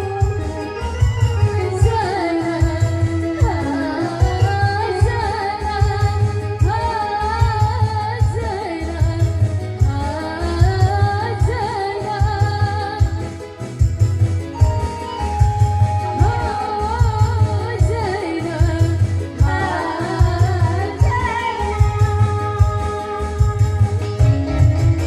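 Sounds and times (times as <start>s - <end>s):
backing track with pulsing bass: 0.0s - 25.0s
person singing ornamented melody: 16.0s - 18.5s.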